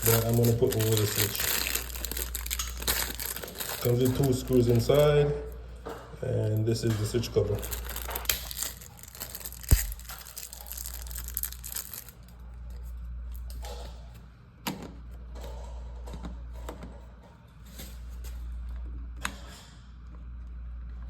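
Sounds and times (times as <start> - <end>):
packaging rustling: 0.0 - 5.3, 6.6 - 12.2
steady low hum: 0.0 - 21.0.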